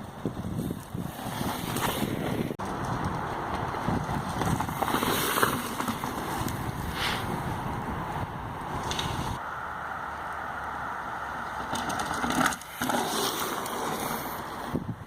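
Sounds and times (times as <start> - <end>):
wind buffeting microphone: 0.0 - 9.4, 14.6 - 15.0.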